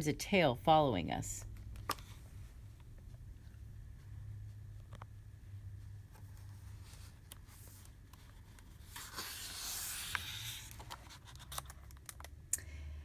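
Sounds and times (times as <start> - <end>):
paper page rustling: 6.2 - 12.2.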